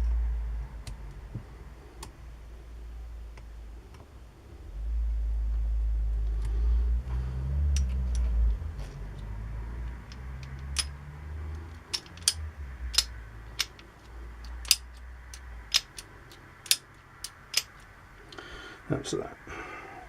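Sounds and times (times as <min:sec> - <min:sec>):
low handling rumble: 0:00.0 - 0:20.0
metal clicks and taps: 0:09.1 - 0:18.4.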